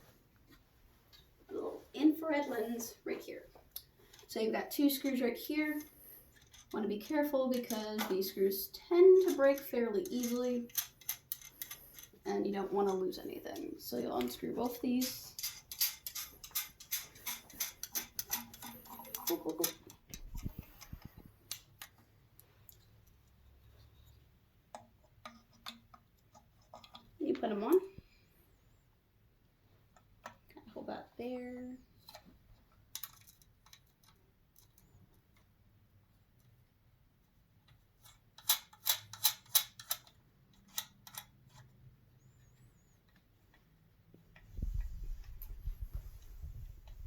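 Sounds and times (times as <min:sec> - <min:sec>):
faint clicks and taps of screws: 0:05.8 - 0:06.8, 0:09.2 - 0:12.2, 0:15.0 - 0:27.2, 0:29.9 - 0:30.6, 0:32.0 - 0:35.6, 0:37.6 - 0:47.0.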